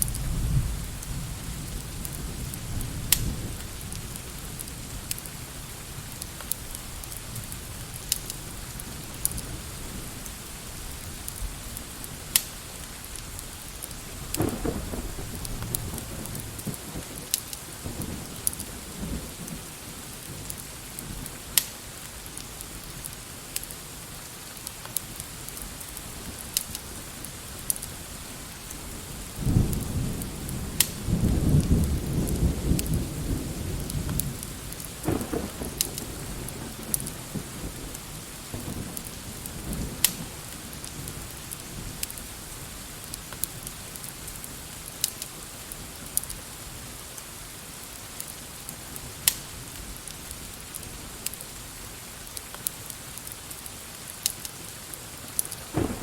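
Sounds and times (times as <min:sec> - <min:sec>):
thunder rumbling: 0:00.0 - 0:06.2, 0:14.1 - 0:19.8, 0:28.8 - 0:42.8, 0:55.6 - 0:56.0
sharp crackles: 0:00.0 - 0:20.7, 0:21.3 - 0:23.8, 0:24.5 - 0:28.8, 0:29.6 - 0:33.0, 0:33.8 - 0:51.6, 0:52.2 - 0:56.0
rain hissing: 0:00.0 - 0:56.0.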